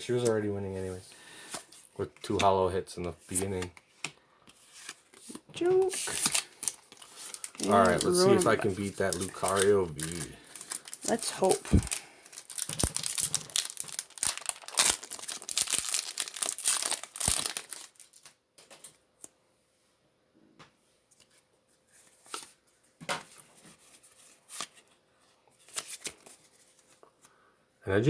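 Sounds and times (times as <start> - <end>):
cards clicking and rustling: 3.3 - 18.9
foil pack tearing and crinkling: 5.9 - 18.3.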